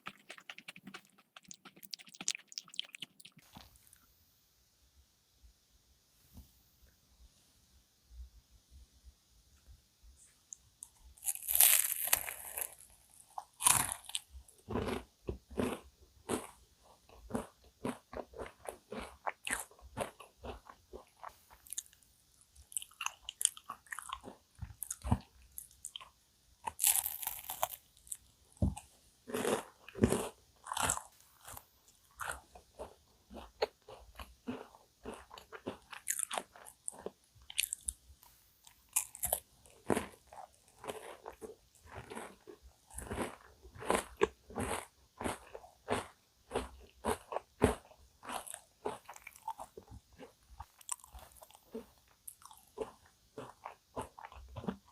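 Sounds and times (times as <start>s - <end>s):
crackling chewing: 0.0s - 4.0s, 10.8s - 54.9s
crunching bites: 11.2s - 16.6s, 26.7s - 28.2s.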